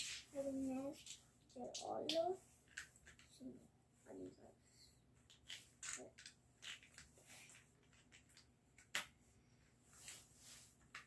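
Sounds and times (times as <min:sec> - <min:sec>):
plastic bricks clicking together: 0:05.3 - 0:09.1.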